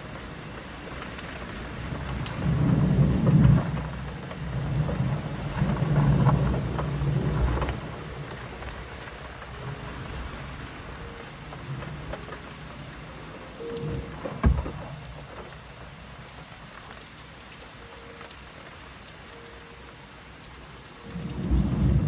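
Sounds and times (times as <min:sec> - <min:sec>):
steady rain: 0:00.0 - 0:22.0
deep roll of thunder: 0:00.2 - 0:15.2, 0:21.0 - 0:22.0.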